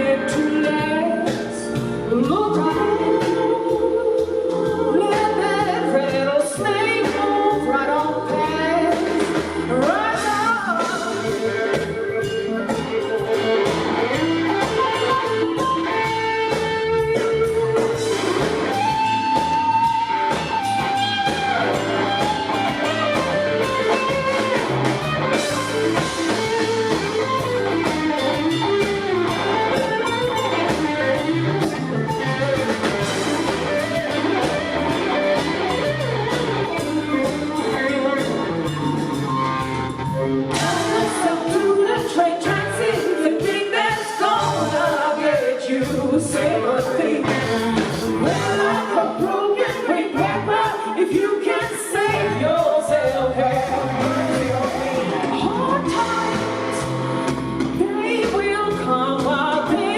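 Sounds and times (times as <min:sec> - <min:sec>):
blues-rock band playing: 0:00.0 - 0:59.9
electric guitar solo: 0:09.5 - 0:43.0.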